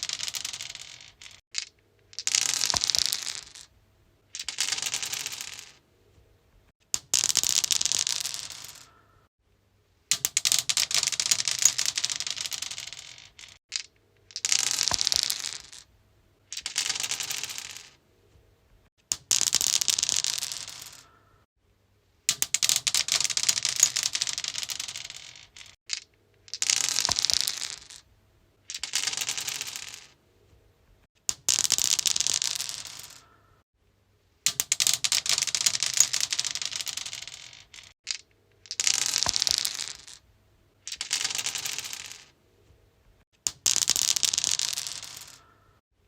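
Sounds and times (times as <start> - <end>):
dice clattering on stone: 0.0 - 3.7, 4.3 - 5.8, 6.9 - 9.0, 10.1 - 15.9, 16.5 - 18.0, 19.1 - 21.2, 22.3 - 30.2, 31.3 - 33.3, 34.5 - 40.2, 40.8 - 42.4, 43.4 - 45.7.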